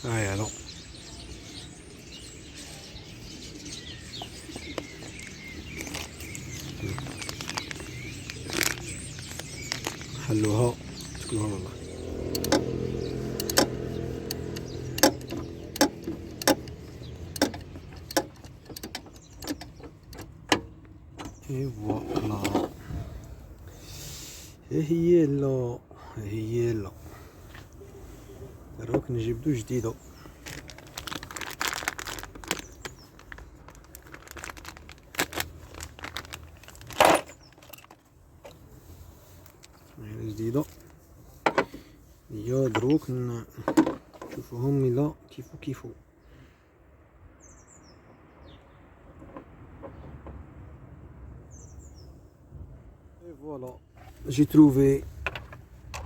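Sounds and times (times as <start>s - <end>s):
packaging crinkling: 4.8s - 11.6s, 30.3s - 38.0s
clicks: 12.3s - 12.7s, 13.4s - 21.3s.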